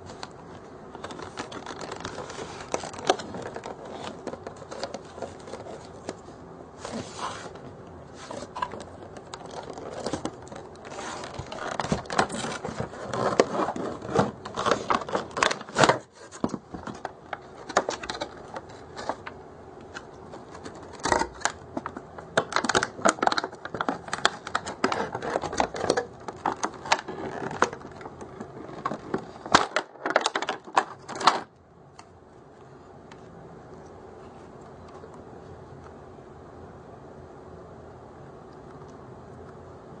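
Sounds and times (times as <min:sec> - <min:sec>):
plastic packaging being handled: 0:00.0 - 0:31.5.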